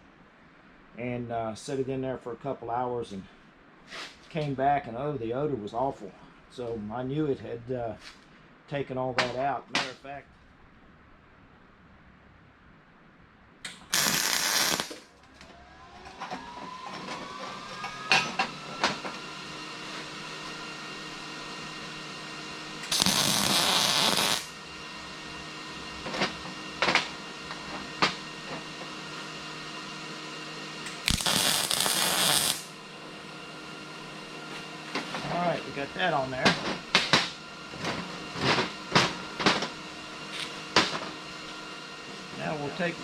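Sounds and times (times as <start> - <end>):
welder machine humming: 13.6 - 43.0
welding arc crackle: 13.7 - 15.2, 22.8 - 24.6, 30.9 - 32.8.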